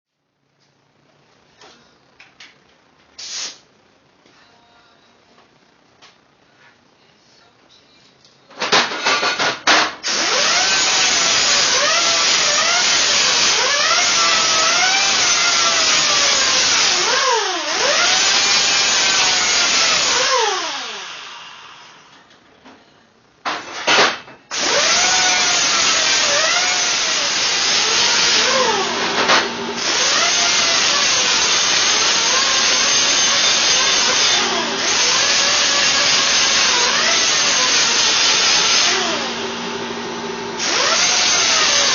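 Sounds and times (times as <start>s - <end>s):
cutoff wheel cutting steel: 10.0s - 21.5s, 24.5s - 41.9s.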